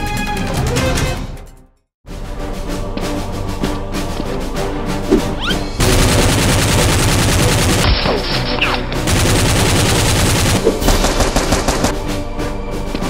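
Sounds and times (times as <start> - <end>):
background music: 0.0 - 13.0
rapid automatic gunfire: 5.8 - 12.0.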